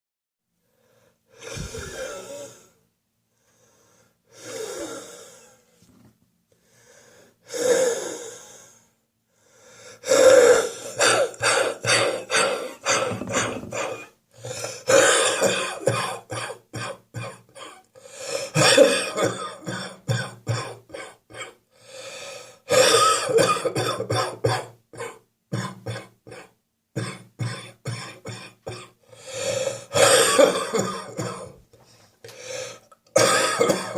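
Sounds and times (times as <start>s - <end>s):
person coughing wetly: 10.9s - 17.8s, 18.5s - 21.6s, 22.7s - 29.0s, 29.6s - 31.6s, 33.1s - 33.9s.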